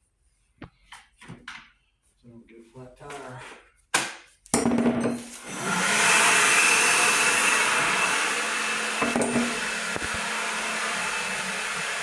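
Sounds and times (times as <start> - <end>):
electric blower motor whining: 5.4 - 12.0.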